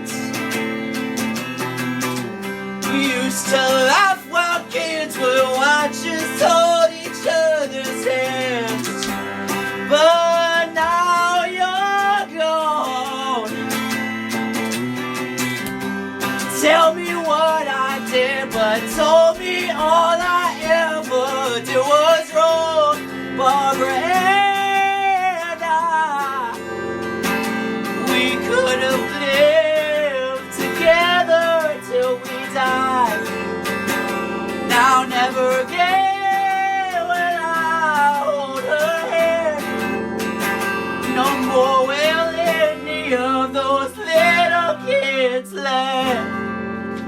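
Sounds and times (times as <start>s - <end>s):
acoustic guitar: 0.0s - 47.0s
man singing long held notes: 2.8s - 8.9s, 16.5s - 26.6s, 28.0s - 33.2s, 34.7s - 39.8s, 41.1s - 46.3s.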